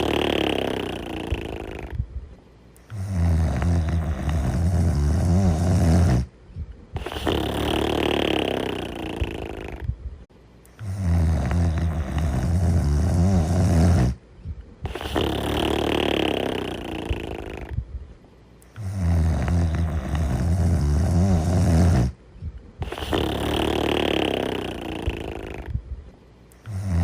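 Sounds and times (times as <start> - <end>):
loud slow snoring: 0.0 - 2.0, 2.8 - 6.3, 7.0 - 9.9, 10.8 - 14.2, 14.8 - 17.8, 18.7 - 22.2, 22.8 - 25.8, 26.6 - 27.0.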